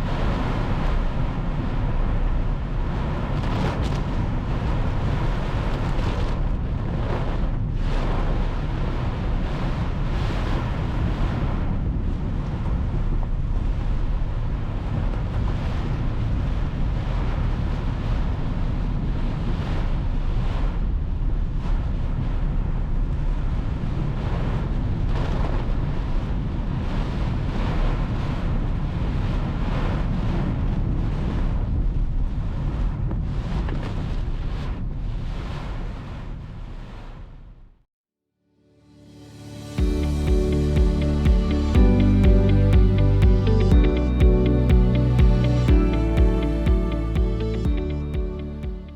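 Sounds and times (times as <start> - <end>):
wind gusts buffeting microphone: 0.0 - 20.6.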